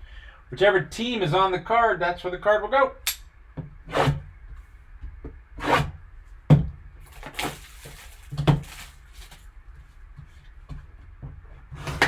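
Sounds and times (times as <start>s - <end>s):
cardboard rubbing and scraping: 3.9s - 4.3s, 5.6s - 6.0s, 7.0s - 9.5s, 11.6s - 12.0s
cardboard scrapes and knocks: 3.9s - 4.7s, 5.6s - 9.5s, 10.2s - 12.0s.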